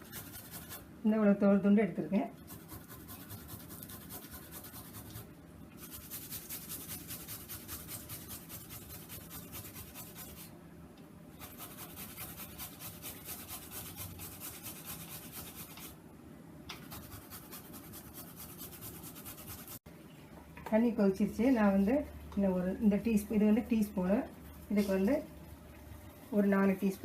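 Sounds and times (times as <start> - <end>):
ginger rasping on a grater: 2.5 - 10.5, 11.4 - 15.9.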